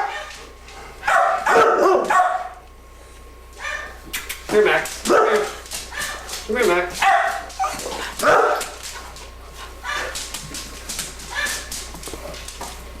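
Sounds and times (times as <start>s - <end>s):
dog barking and yipping: 0.0s - 0.4s, 1.0s - 2.6s, 3.6s - 9.1s, 9.8s - 10.4s, 11.2s - 11.9s.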